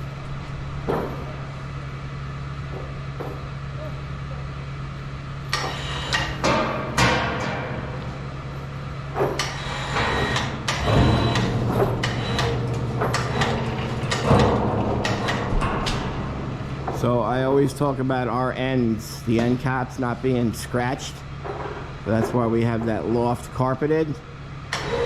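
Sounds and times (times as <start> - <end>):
metallic clanks and knocks: 5.6 - 8.0, 9.1 - 17.2, 21.4 - 23.3.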